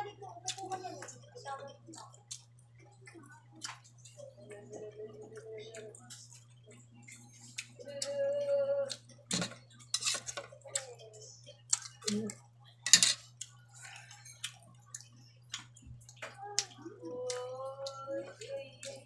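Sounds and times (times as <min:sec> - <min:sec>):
steady low hum: 0:00.0 - 0:19.0
person chewing and crunching: 0:01.9 - 0:04.6, 0:05.3 - 0:10.0, 0:13.2 - 0:19.0.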